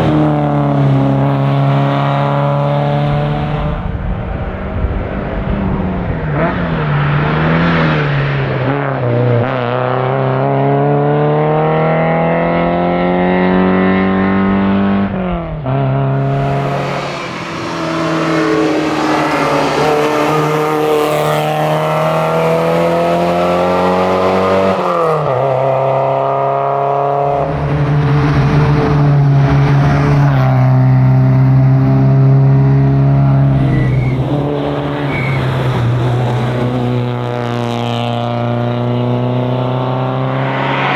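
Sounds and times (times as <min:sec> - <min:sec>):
car engine accelerating hard: 0:00.0 - 0:40.9.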